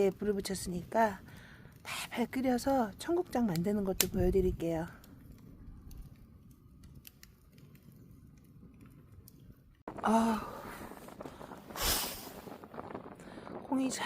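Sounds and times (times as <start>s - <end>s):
wood fire crackling: 0.0s - 14.0s
low rumble: 4.0s - 14.0s.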